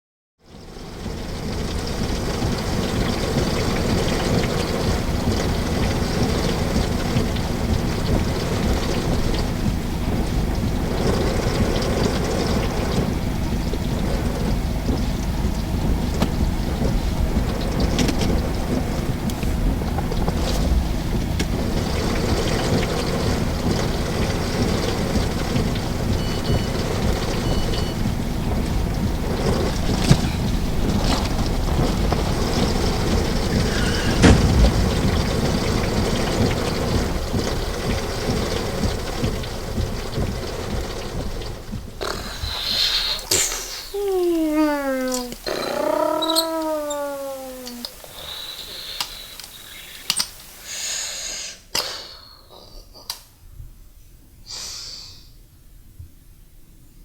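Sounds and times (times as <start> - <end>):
heavy rain: 0.4 - 50.8
low rumbling noise: 0.5 - 48.4
light crackle: 0.5 - 50.7.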